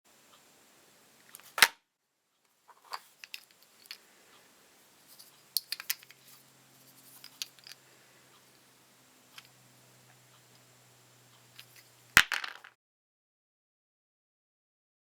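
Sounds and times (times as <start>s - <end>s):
small hand tools clicking and tapping: 5.2s - 6.3s, 7.2s - 7.8s.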